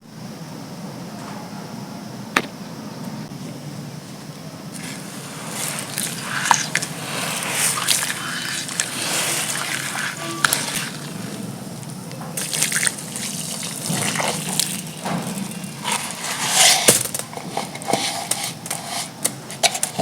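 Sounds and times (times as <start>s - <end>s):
paste crackling and trickling: 4.7s - 20.0s.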